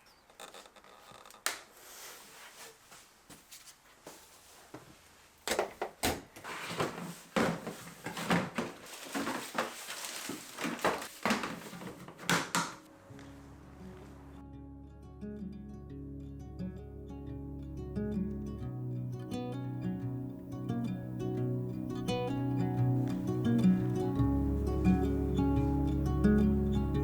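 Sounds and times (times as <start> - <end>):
objects knocking and clicking: 10.6 - 12.8
soft music: 12.6 - 27.0.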